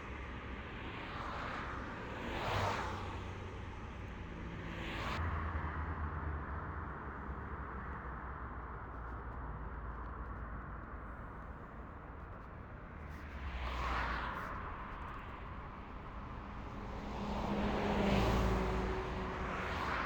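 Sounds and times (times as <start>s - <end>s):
road traffic rumble: 13.4s - 20.0s.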